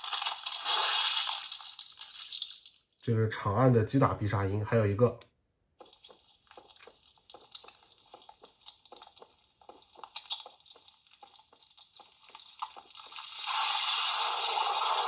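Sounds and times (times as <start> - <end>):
loud noisy toy sound effect: 13.4 - 15.0.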